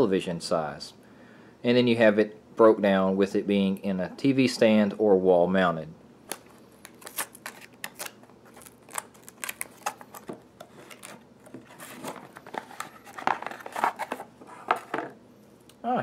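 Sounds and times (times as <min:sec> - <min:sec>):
packaging being opened by hand: 0:06.2 - 0:14.9.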